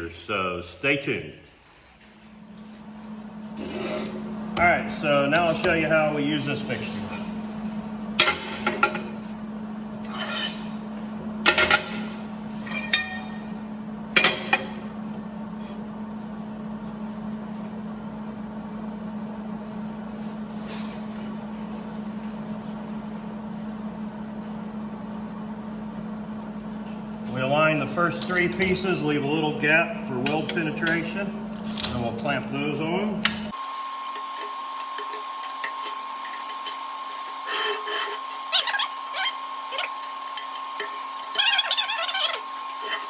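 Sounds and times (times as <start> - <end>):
steady low hum: 0.0 - 33.6.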